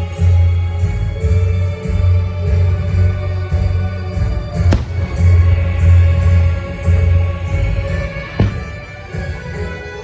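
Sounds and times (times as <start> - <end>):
sharp firework bang: 4.7 - 6.7.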